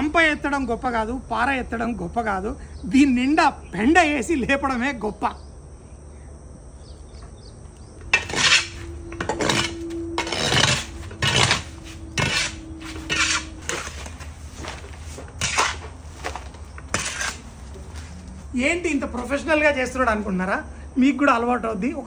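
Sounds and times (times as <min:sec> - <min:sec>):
metal shovel scraping floor: 0:08.1 - 0:18.4.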